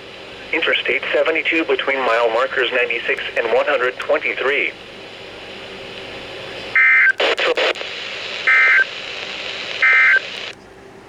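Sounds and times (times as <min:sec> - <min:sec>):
radio hiss: 0:00.0 - 0:10.6
digital data tone bursts: 0:09.8 - 0:10.4.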